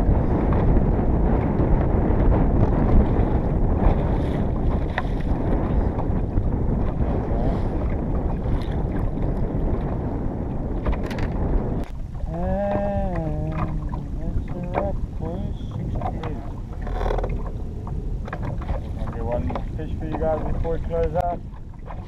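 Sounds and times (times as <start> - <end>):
boat engine rumble: 0.0 - 22.0
wind buffeting microphone: 0.0 - 22.0.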